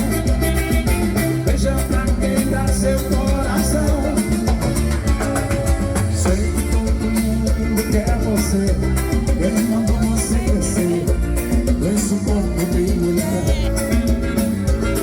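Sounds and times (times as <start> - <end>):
latin dance band music: 0.0 - 15.0.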